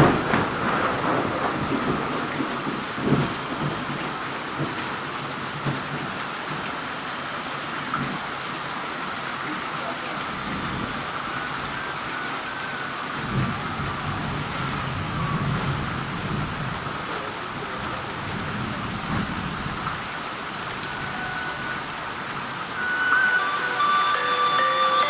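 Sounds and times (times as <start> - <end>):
thunder rumble: 0.0 - 6.6, 10.3 - 12.2, 13.0 - 23.4
heavy rain: 0.0 - 25.0
tune playing: 20.8 - 25.0.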